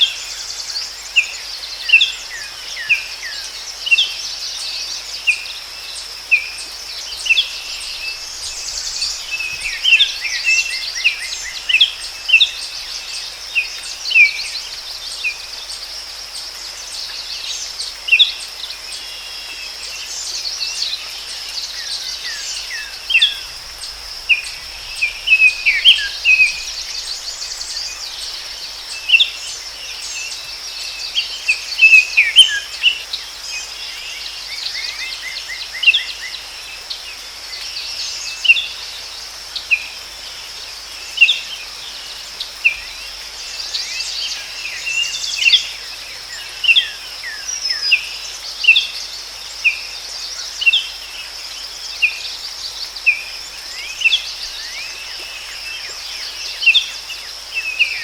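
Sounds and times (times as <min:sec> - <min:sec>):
insect drone: 0:00.0 - 0:58.0
birds chirping: 0:06.9 - 0:15.6, 0:22.0 - 0:30.5.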